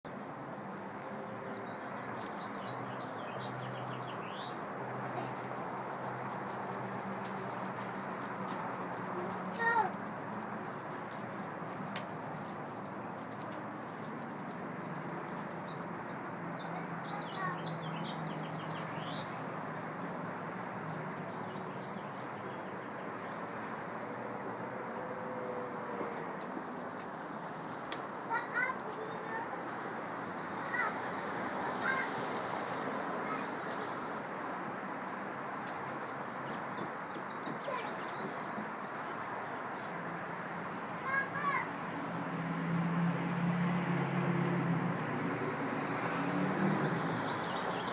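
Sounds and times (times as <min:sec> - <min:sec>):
vehicle engine humming: 0:00.0 - 0:28.3, 0:39.5 - 0:47.9
urban background noise: 0:00.0 - 0:47.9
birds chirping: 0:00.1 - 0:29.6, 0:35.9 - 0:42.0, 0:45.7 - 0:47.9.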